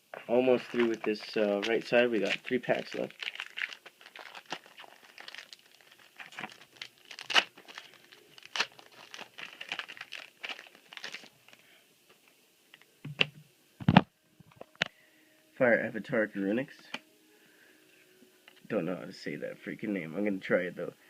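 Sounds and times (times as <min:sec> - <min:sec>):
foil wrapper crinkling and tearing: 0:00.4 - 0:11.6.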